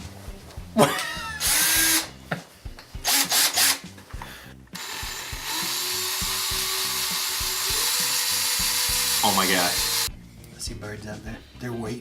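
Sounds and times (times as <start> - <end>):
faint background music beat: 0.0 - 12.0
small power tool motor: 1.4 - 2.1, 3.1 - 3.8, 4.8 - 10.1.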